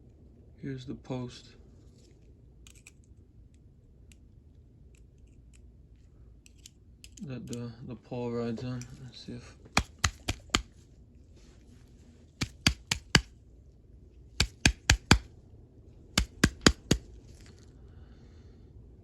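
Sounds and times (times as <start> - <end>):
light hammer taps on metal: 9.8 - 10.6, 12.4 - 13.3, 14.4 - 15.2, 16.2 - 17.0.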